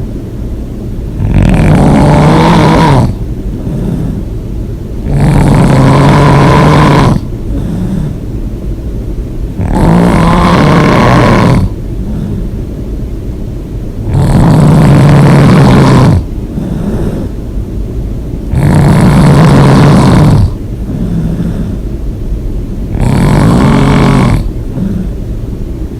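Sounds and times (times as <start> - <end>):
person snoring loudly: 1.2 - 4.3, 5.0 - 8.2, 9.6 - 12.5, 14.0 - 17.4, 18.5 - 21.8, 22.9 - 25.2.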